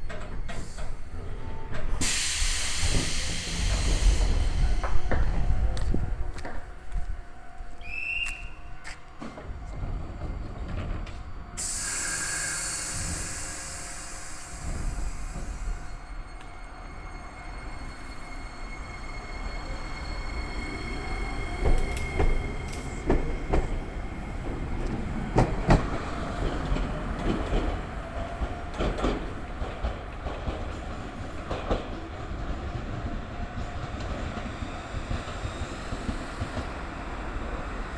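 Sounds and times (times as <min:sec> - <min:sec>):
train low rumble: 0:00.0 - 0:37.9.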